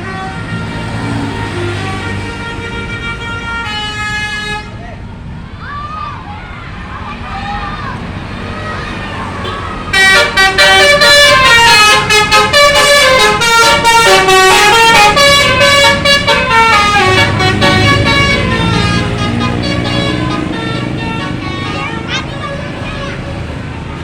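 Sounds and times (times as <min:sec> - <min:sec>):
bus horn playing a tune: 0:00.0 - 0:04.8, 0:09.3 - 0:23.6
bus engine rumbling: 0:00.0 - 0:24.0.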